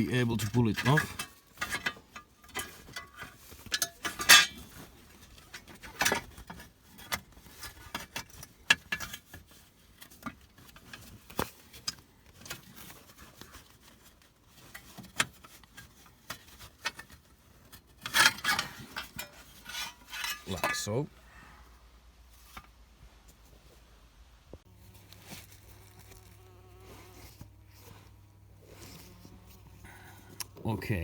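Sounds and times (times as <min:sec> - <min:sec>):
metal heat shield clinking: 0:00.0 - 0:06.6, 0:17.9 - 0:21.0.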